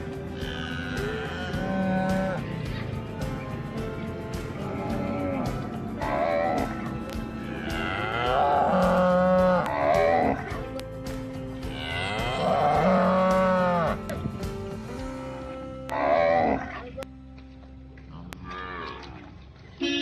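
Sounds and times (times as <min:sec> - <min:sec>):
soft background music: 0:00.0 - 0:19.8
cow mooing: 0:00.4 - 0:02.5, 0:04.6 - 0:10.6, 0:11.6 - 0:14.1, 0:15.3 - 0:17.0, 0:18.1 - 0:20.0.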